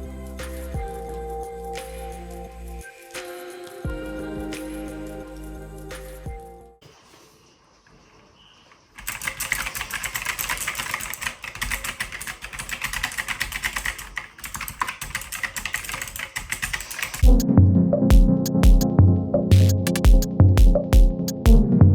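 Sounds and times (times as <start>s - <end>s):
fast mechanical keyboard typing: 9.0s - 17.4s.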